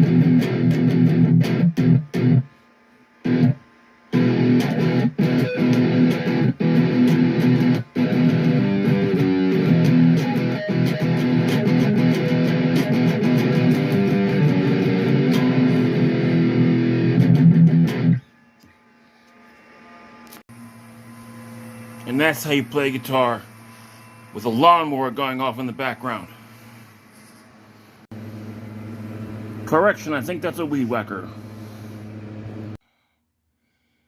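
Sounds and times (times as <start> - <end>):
electric guitar chords: 0.0 - 2.5, 3.2 - 18.3.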